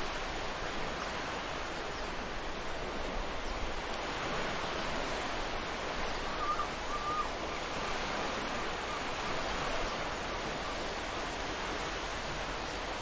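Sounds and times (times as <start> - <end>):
sea waves breaking on beach: 0.0 - 13.0
bird calls: 6.2 - 7.4.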